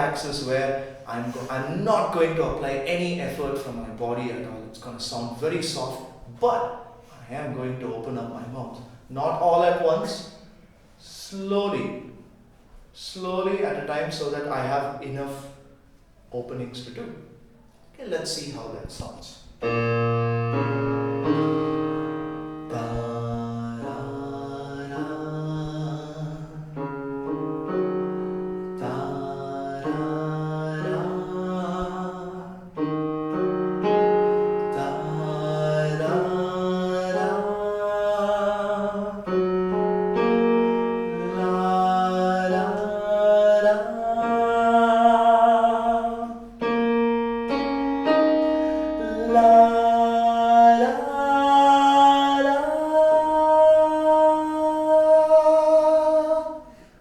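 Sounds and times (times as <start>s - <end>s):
electronic keyboard chords: 19.6s - 55.4s
man singing softly: 21.2s - 27.4s, 28.5s - 46.7s, 48.1s - 56.9s.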